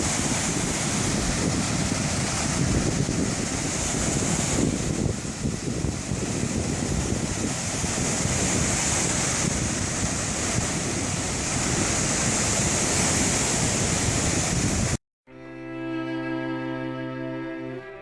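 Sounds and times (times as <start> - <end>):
wind buffeting microphone: 0.0 - 15.0
bowed string music: 15.3 - 18.0.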